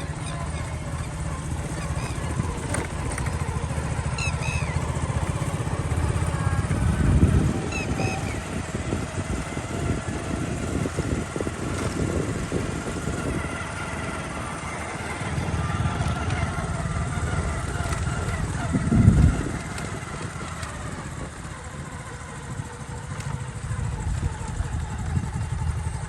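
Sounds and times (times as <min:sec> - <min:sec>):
bird chirps: 0:00.0 - 0:09.9
engine running: 0:00.0 - 0:26.0.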